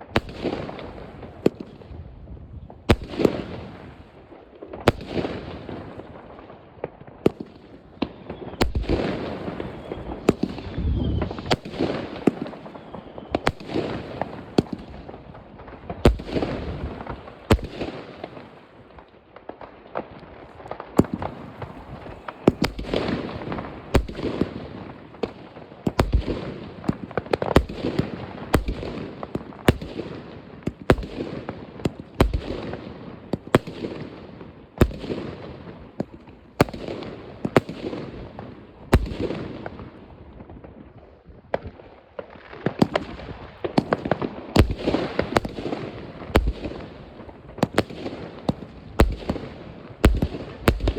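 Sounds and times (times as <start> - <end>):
rumble of distant explosions: 20.4 - 40.9
firecrackers banging: 21.0 - 37.9.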